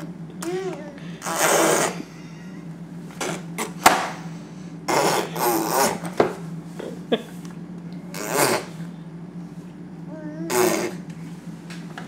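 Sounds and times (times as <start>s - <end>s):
baby blowing a raspberry: 1.1s - 2.1s, 4.9s - 6.0s, 8.1s - 8.8s, 10.4s - 11.0s.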